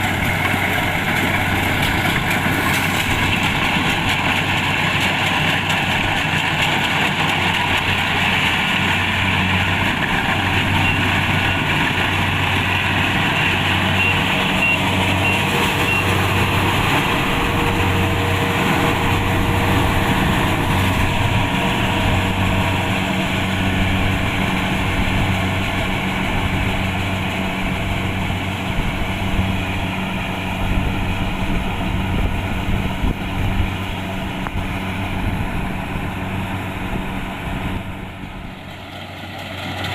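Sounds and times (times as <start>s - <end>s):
combine harvester engine drone: 0.0s - 39.9s.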